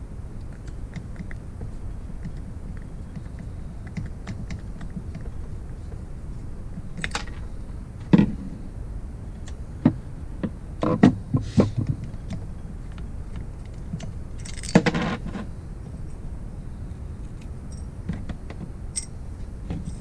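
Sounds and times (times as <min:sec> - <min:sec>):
metal tools clinking: 0:13.6 - 0:15.1, 0:17.4 - 0:17.9, 0:18.9 - 0:19.2.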